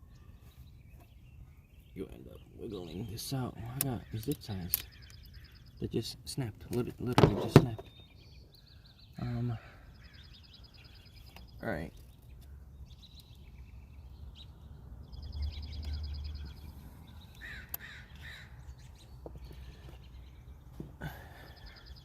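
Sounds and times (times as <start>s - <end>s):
bird trilling: 2.4s - 6.0s, 15.2s - 19.9s
short bird calls: 2.8s - 5.9s, 15.7s - 22.0s.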